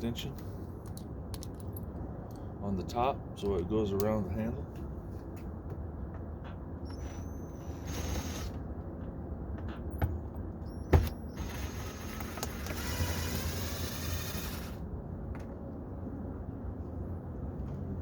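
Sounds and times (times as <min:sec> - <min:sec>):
cordless drill running: 0:06.9 - 0:08.6, 0:11.3 - 0:14.8.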